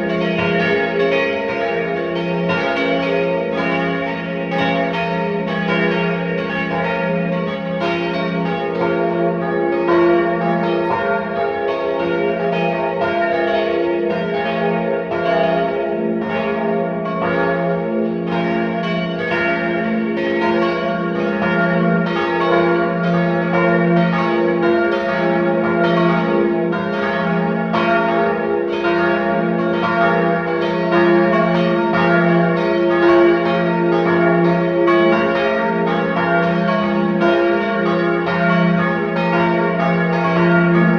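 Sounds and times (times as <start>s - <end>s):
church bells ringing: 0.0s - 40.9s.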